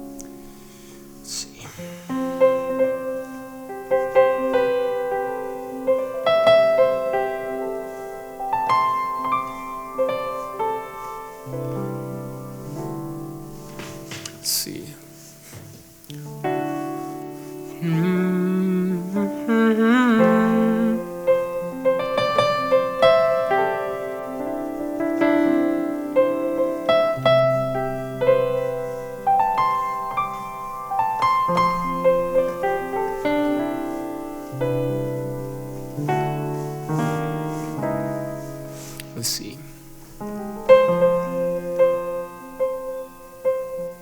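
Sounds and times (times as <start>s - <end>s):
piano playing slow chords: 0.0s - 44.0s
wavering hum: 17.8s - 21.6s.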